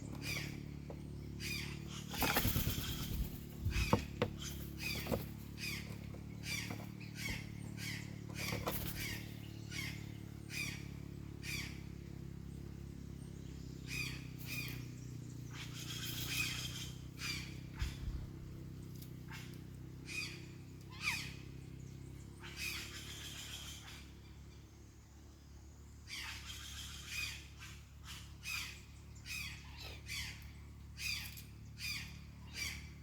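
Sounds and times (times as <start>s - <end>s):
wings fluttering: 0.0s - 11.9s, 15.5s - 21.4s
small birds chirping: 0.0s - 33.0s.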